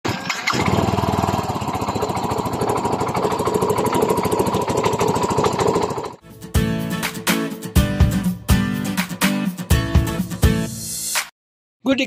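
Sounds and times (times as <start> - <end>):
scooter engine knocking rattle: 0.1 - 6.2.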